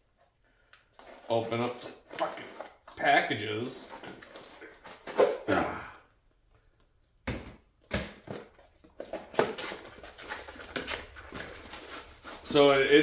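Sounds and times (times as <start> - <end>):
packaging rustling and crinkling: 0.9 - 3.0, 3.8 - 5.4, 8.3 - 12.7.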